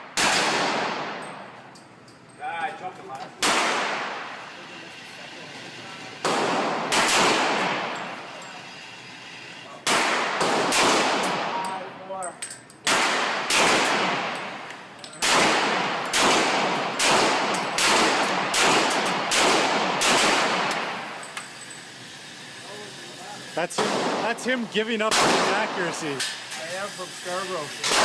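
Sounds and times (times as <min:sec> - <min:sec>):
pistol shots echoing: 0:00.0 - 0:01.3, 0:06.2 - 0:08.0, 0:09.8 - 0:11.6, 0:12.8 - 0:21.2, 0:25.0 - 0:25.9.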